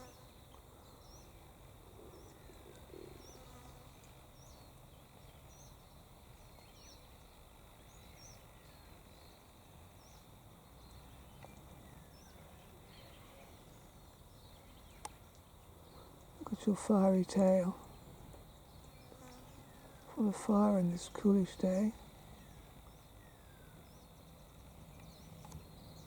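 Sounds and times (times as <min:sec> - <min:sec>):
faint outdoor background: 0:00.0 - 0:26.0
small bird chirping: 0:02.0 - 0:20.1.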